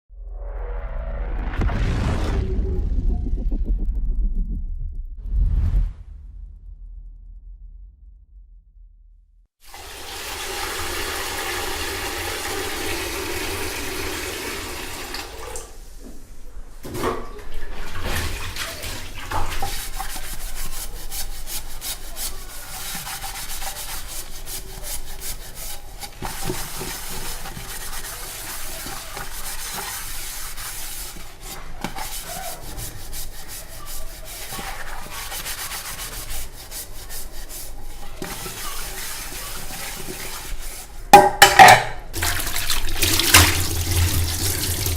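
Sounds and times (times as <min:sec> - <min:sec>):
scrubbing steel dishes: 0:17.1 - 0:44.9.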